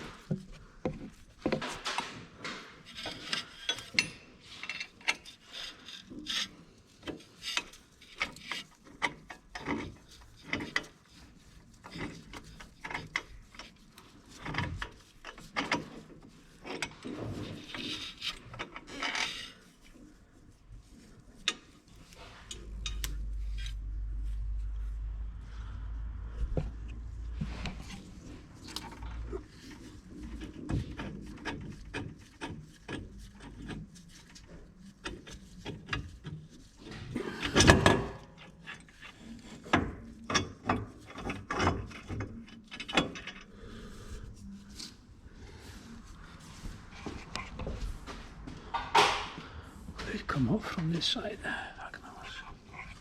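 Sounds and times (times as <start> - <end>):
scraping or rubbing: 0.0 - 51.4
low steady hum: 20.5 - 31.9.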